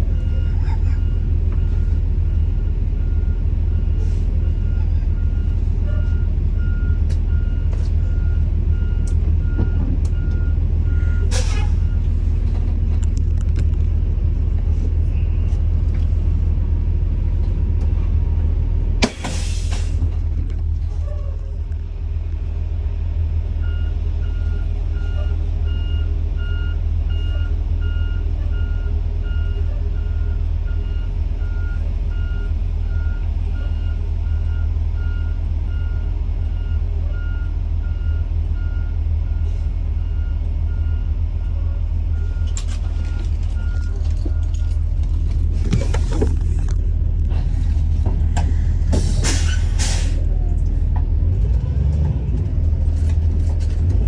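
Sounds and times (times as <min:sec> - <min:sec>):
diesel bus idling: 0:00.0 - 0:54.0
air brake hisses: 0:11.3 - 0:11.8, 0:48.9 - 0:50.3
reversing alarm beeping: 0:23.6 - 0:44.9.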